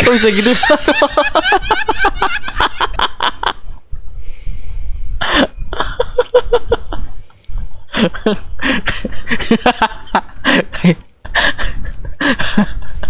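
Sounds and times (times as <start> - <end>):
sharp breathy burst: 3.8 - 5.7.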